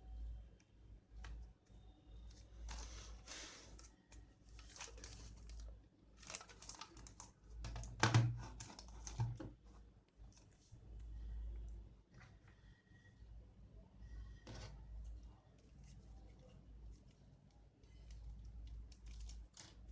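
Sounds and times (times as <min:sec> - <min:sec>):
packaging crinkling and rustling: 0:02.3 - 0:09.6, 0:17.8 - 0:19.9.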